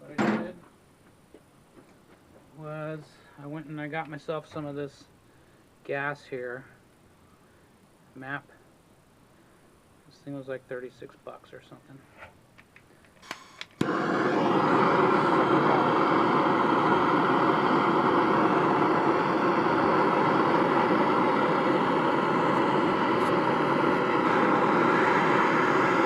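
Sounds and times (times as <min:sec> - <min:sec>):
torch igniter clicks: 0:12.6 - 0:14.0
gas torch flame hissing: 0:13.2 - 0:26.0.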